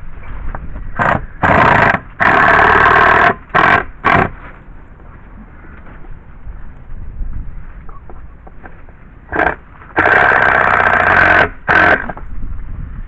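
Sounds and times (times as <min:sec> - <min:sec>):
power drill driving screw into wood: 0:01.0 - 0:04.3, 0:09.3 - 0:12.2.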